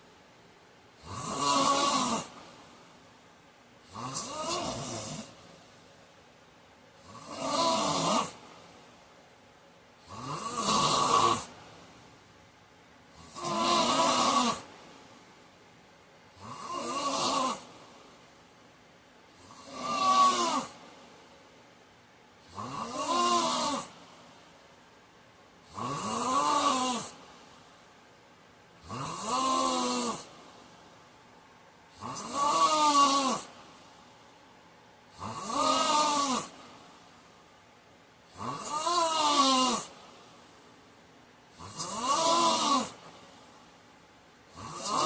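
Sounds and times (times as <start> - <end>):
man snoring: 1.0 - 2.5, 3.9 - 5.4, 7.0 - 8.4, 10.0 - 11.6, 13.1 - 14.7, 16.3 - 17.7, 19.3 - 20.8, 22.4 - 24.0, 25.6 - 27.2, 28.8 - 30.4, 31.9 - 33.6, 35.1 - 36.6, 38.3 - 40.0, 41.5 - 43.1, 44.5 - 45.0.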